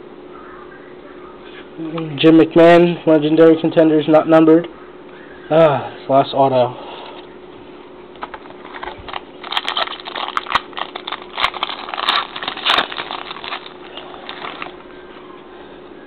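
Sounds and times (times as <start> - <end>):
foil wrapper crinkling and tearing: 8.5 - 14.9.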